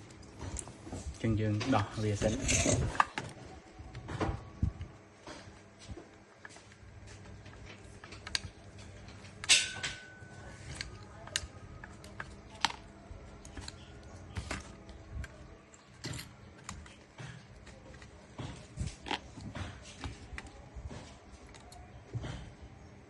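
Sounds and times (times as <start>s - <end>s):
tools clicking and tapping: 7.2s - 22.5s.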